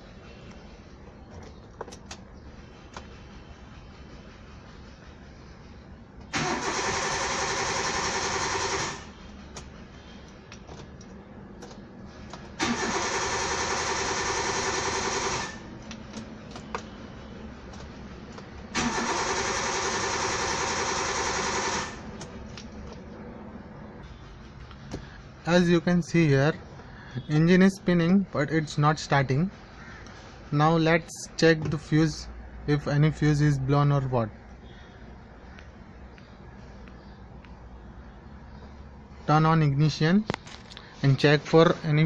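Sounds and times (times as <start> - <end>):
car starter motor cranking: 6.3 - 9.1, 12.5 - 15.6, 18.7 - 22.1.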